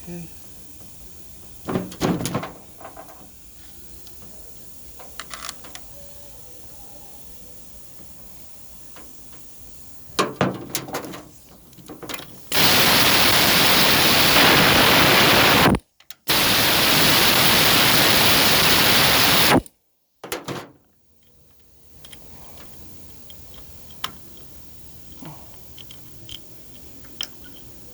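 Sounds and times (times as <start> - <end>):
bursts of rushing hiss: 12.4 - 19.6.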